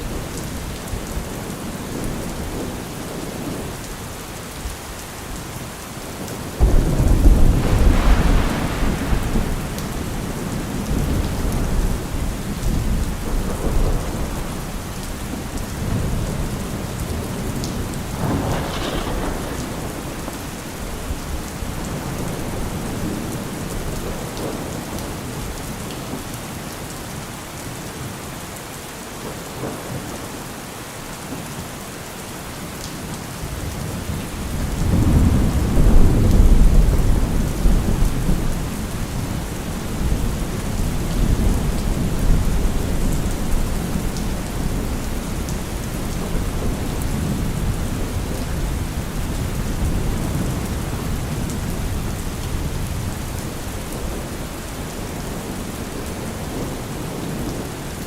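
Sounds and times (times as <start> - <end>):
steady rain: 0.0 - 58.0
sharp thunder crack: 6.6 - 12.9, 18.2 - 21.3
thunder rumbling: 6.6 - 24.6, 33.6 - 54.5.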